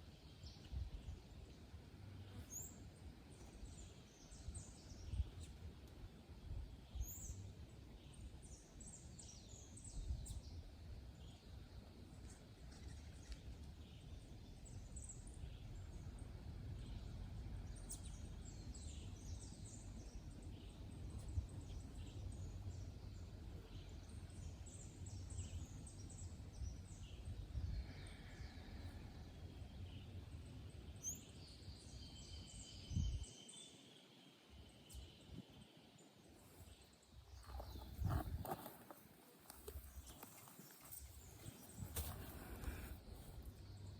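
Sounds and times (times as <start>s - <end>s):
birds chirping: 21.7s - 43.9s.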